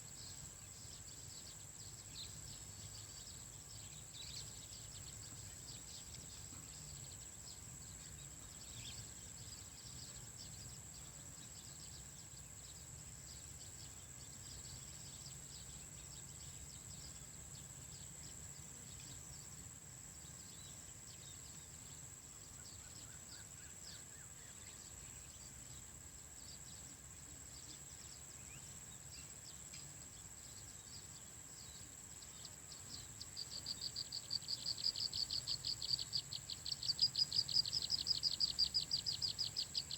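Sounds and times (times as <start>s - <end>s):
pulsing insect trill: 0.1s - 39.9s
bird chirps: 26.4s - 39.9s.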